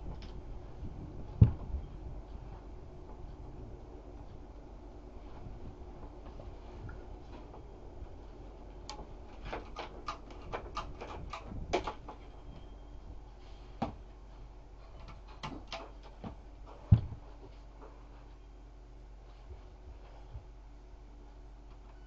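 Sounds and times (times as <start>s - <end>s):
steady low hum: 0.0s - 22.0s
sharp clicks and knocks: 8.8s - 12.3s, 15.0s - 17.2s.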